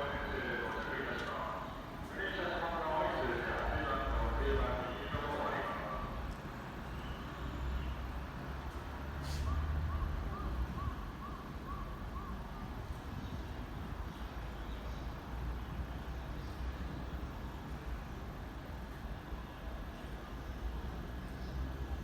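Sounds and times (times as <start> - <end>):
electric train rumble: 0.0 - 6.8.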